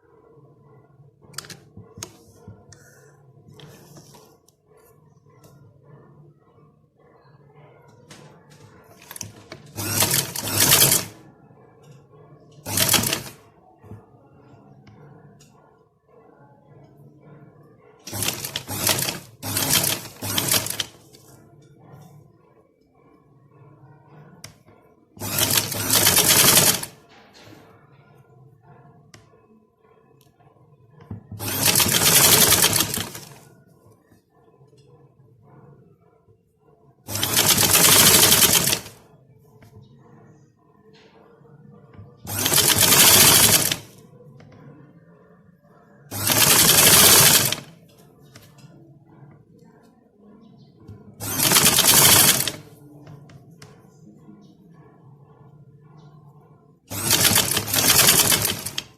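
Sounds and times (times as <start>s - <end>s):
electric sewing machine stitching: 9.0s - 11.1s, 12.7s - 13.4s, 18.1s - 21.0s, 25.2s - 26.9s, 31.4s - 33.4s, 37.1s - 38.9s, 42.3s - 43.9s, 46.1s - 47.7s, 51.2s - 52.6s, 56.9s - 58.9s.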